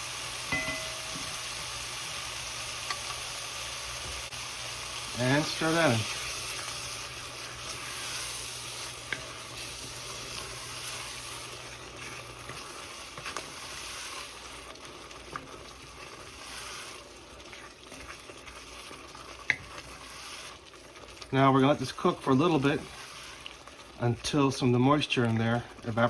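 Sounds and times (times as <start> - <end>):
curry sizzling in a saucepan: 0.0 - 26.0.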